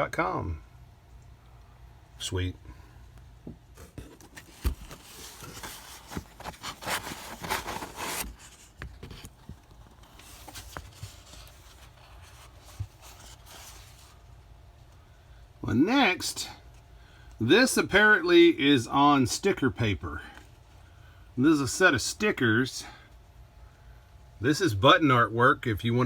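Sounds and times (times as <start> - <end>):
paper rustling and rubbing: 3.8 - 14.2.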